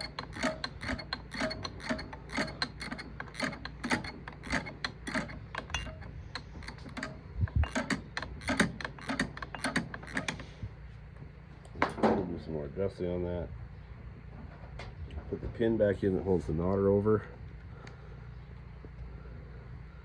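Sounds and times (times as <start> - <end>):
ratcheting wrench clicking: 0.0 - 10.5.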